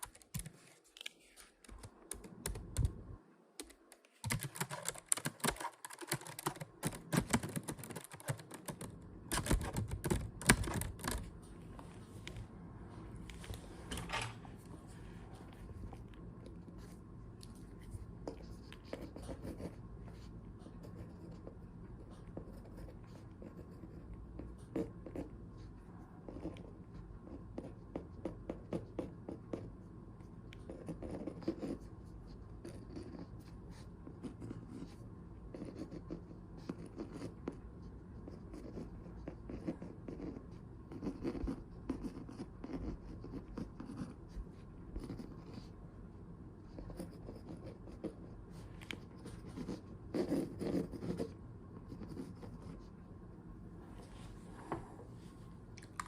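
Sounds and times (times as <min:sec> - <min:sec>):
pen scratching on paper: 0:17.6 - 0:29.7, 0:30.6 - 0:45.7, 0:46.6 - 0:48.4, 0:49.0 - 0:52.9.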